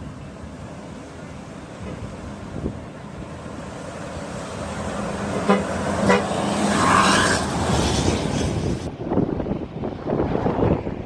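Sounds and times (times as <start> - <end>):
passing bus rush: 0.0 - 11.0
bus horn tooting: 5.3 - 7.3.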